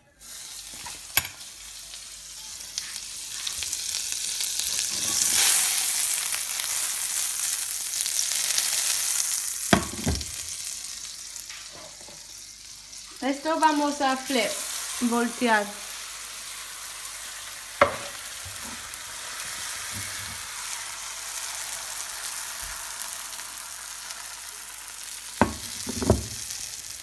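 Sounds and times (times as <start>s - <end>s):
batter sizzling in a frying pan: 0.2s - 27.0s
knock: 25.4s - 26.4s.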